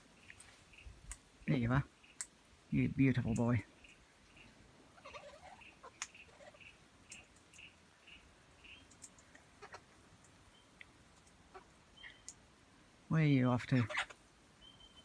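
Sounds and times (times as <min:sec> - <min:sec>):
soft clicks: 0:08.8 - 0:09.5.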